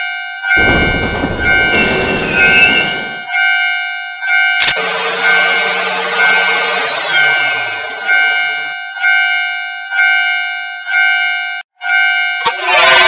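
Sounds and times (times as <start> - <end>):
railroad crossing bell ringing: 0.0 - 13.0
train rushing past: 0.6 - 3.4.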